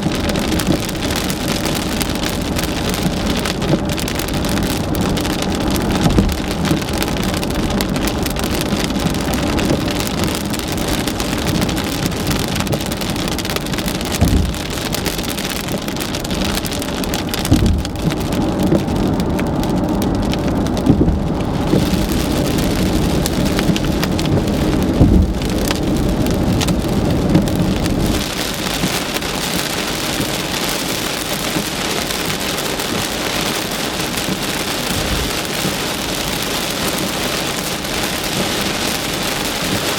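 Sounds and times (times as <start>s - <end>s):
heavy rain pelting a car: 0.0s - 39.9s
low road rumble: 0.0s - 39.9s
low thumps: 5.7s - 7.0s, 14.0s - 14.9s, 17.3s - 28.1s.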